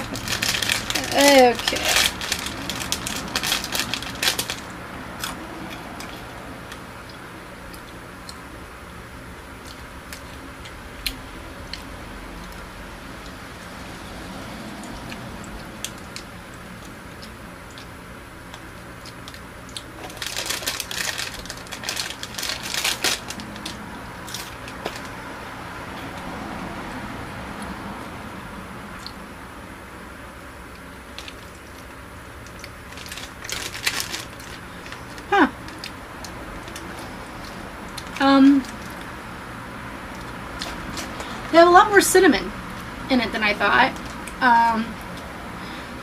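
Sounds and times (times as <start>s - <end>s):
plastic snack bag crinkling: 0.0s - 5.4s, 19.3s - 25.2s, 31.1s - 37.0s, 40.2s - 41.5s.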